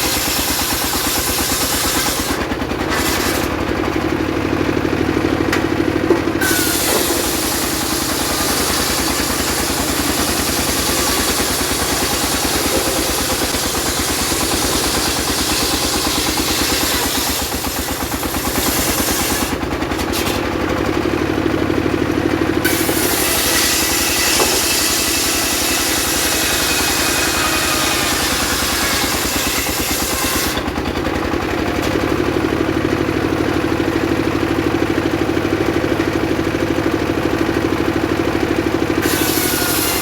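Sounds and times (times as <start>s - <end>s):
saw engine pulsing: 0.0s - 20.7s, 21.9s - 31.8s
saw blade cutting wood hiss: 6.4s - 20.3s, 22.7s - 30.6s, 39.0s - 40.0s.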